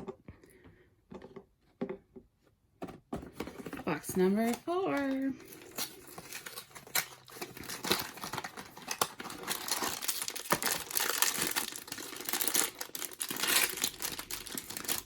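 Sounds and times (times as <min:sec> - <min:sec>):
packaging crinkling and rustling: 0:03.2 - 0:15.0.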